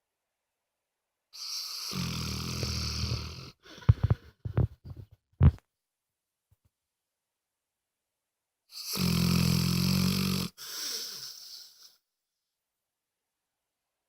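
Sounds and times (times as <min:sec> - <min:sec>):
dog snoring: 0:01.4 - 0:03.6, 0:08.7 - 0:11.9.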